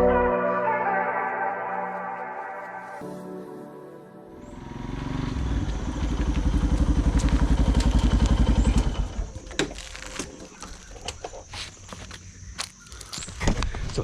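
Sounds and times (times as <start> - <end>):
motorcycle engine running: 4.4 - 10.0.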